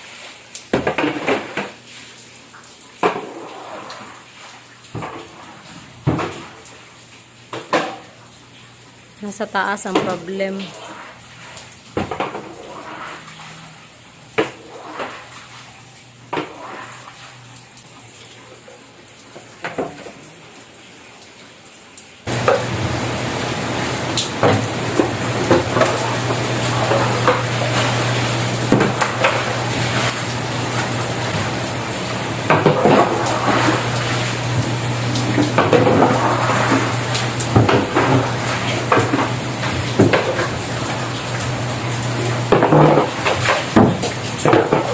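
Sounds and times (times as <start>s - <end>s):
pots and basins clattering: 0.0s - 2.2s, 2.8s - 6.8s, 7.5s - 8.2s, 9.3s - 17.6s, 18.3s - 20.4s, 22.3s - 44.9s
running water: 0.0s - 44.9s
heavy rain hissing: 22.3s - 44.9s.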